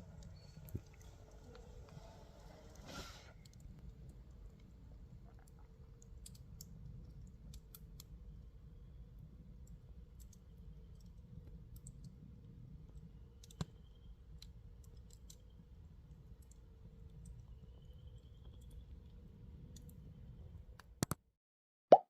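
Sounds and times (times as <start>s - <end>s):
low steady rumble: 0.0s - 20.8s.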